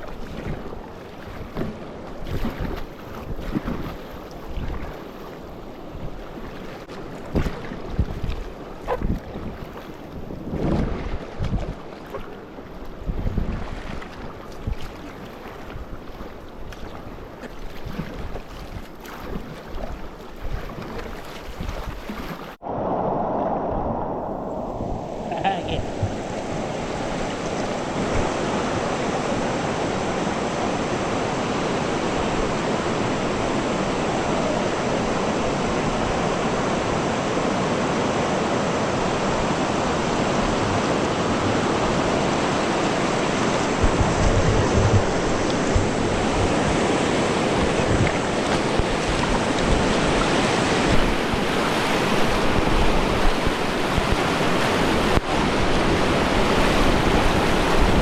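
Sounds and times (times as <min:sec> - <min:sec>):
wind buffeting microphone: 0:00.0 - 0:06.5, 0:07.2 - 0:17.2, 0:17.8 - 0:58.0
river water rushing: 0:24.0 - 0:58.0.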